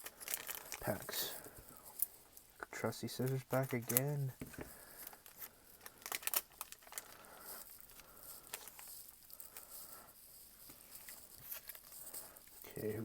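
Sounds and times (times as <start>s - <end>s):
foil wrapper crinkling: 0.0s - 13.0s
scissors snipping foil: 3.2s - 4.2s, 5.0s - 9.6s.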